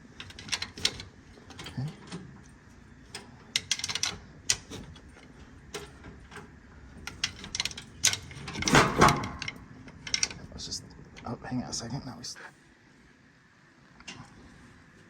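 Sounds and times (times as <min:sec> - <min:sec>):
scraping rattle: 0:03.1 - 0:11.3.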